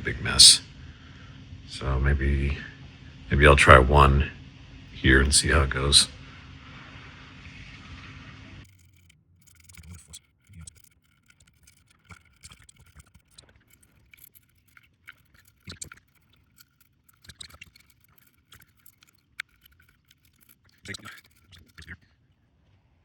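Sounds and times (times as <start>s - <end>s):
brush scrubbing circuit board: 8.6s - 22.0s.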